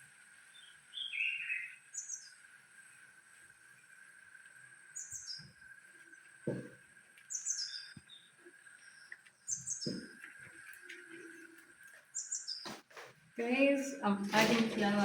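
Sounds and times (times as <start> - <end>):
songbird chirping phrase: 0.4 - 2.5, 4.9 - 6.6, 7.3 - 12.8, 13.4 - 14.8.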